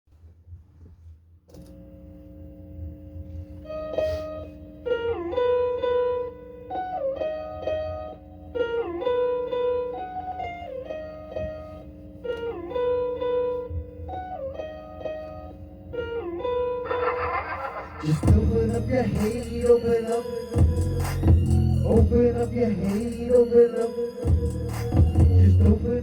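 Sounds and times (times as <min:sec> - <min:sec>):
guitar riff with bent notes: 0:16.0 - 0:26.0
low droning tone: 0:17.6 - 0:23.5.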